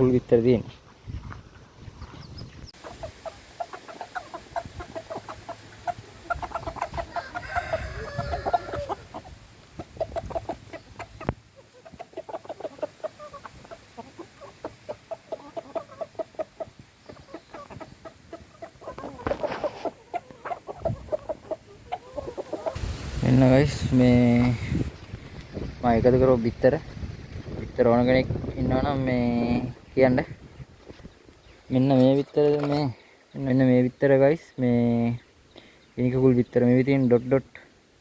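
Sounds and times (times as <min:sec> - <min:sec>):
hens clucking: 0:01.3 - 0:37.4.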